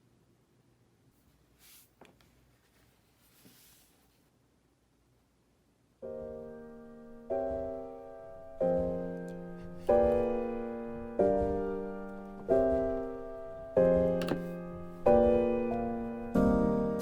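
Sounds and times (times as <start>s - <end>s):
slow piano chords: 6.0s - 17.0s.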